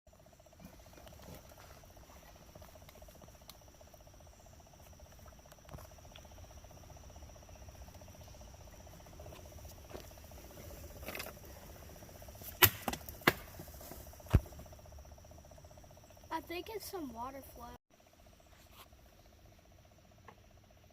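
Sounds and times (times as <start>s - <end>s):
sharp knocks: 12.6s - 13.6s.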